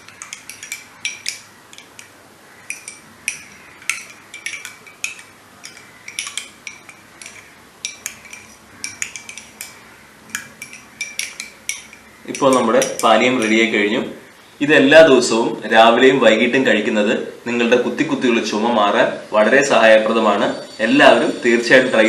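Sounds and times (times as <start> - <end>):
teaspoon clinking against glass: 0.0 - 13.7.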